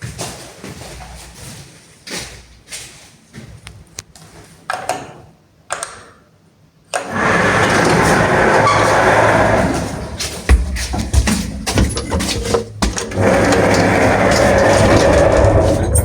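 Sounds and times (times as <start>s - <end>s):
lift machinery rushing: 7.0s - 16.0s
lift relay clicks and knocks: 10.4s - 16.0s.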